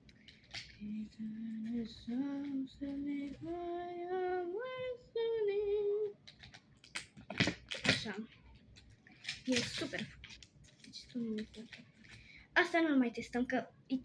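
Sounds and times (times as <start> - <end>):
girl singing wordless tune: 0.7 - 6.2.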